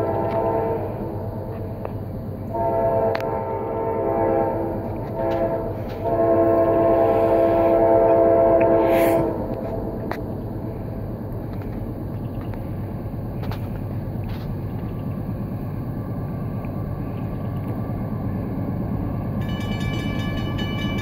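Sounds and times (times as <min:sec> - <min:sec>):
locomotive horn blasts: 0:00.0 - 0:01.2, 0:02.5 - 0:09.8
diesel locomotive rumble: 0:00.0 - 0:21.0.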